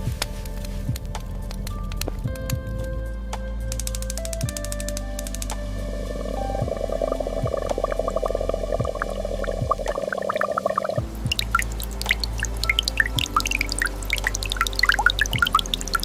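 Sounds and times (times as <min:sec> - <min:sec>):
water drips plinking: 0:03.7 - 0:16.0
liquid pouring: 0:06.4 - 0:16.0.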